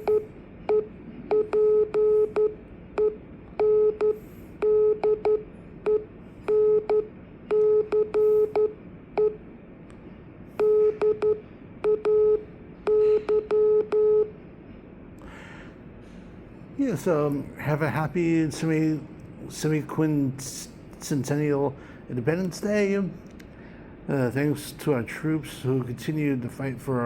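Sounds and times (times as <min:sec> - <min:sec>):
morse code beeping tone: 0:00.0 - 0:09.4, 0:10.6 - 0:14.3.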